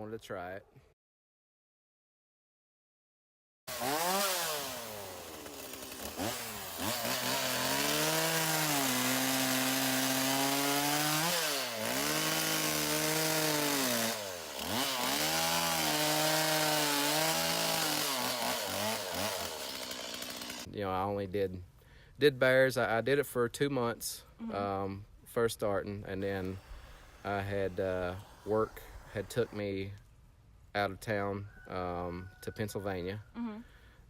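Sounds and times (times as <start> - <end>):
chainsaw cutting wood: 3.7 - 20.7, 26.2 - 30.0.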